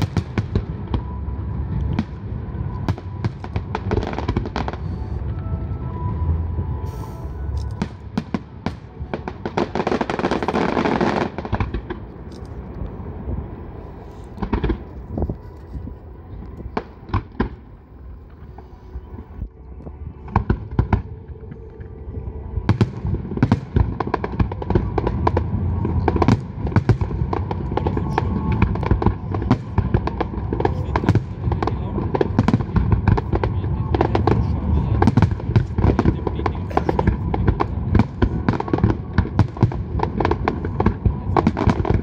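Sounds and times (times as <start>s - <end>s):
fireworks bursting with bangs: 0.0s - 5.3s, 6.8s - 12.3s, 14.3s - 15.9s, 22.6s - 42.0s
fireworks crackling: 0.0s - 19.4s, 20.2s - 42.0s.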